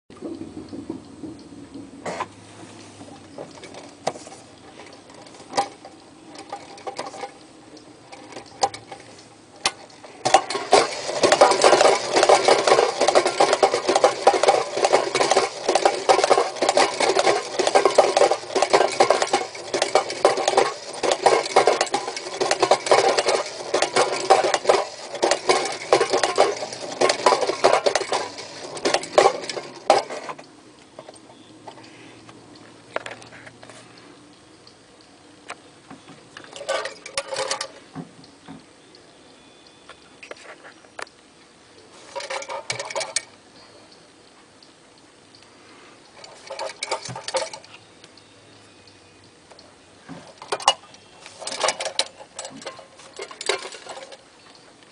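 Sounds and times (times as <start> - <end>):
wind-up toy metallic clatter: 8.1 - 30.4, 42.1 - 43.3, 46.2 - 47.8, 50.4 - 54.2.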